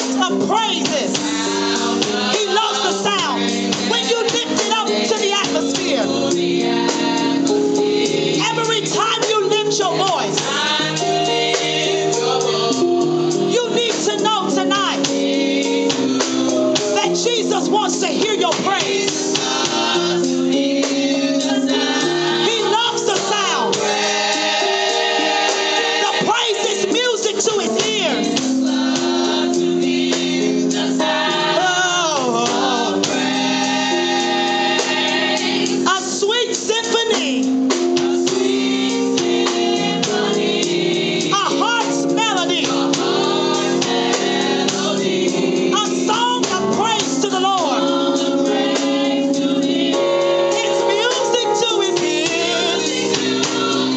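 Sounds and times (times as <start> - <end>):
gospel choir singing: 0.0 - 53.9
instrumental backing chords: 0.0 - 53.9.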